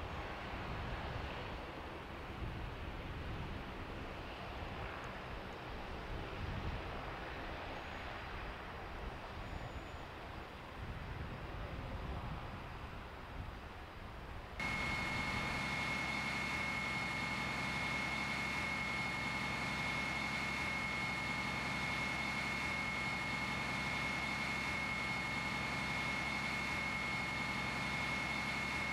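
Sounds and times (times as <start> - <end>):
engine noise: 0.0 - 28.9
steady high whine: 14.4 - 28.9.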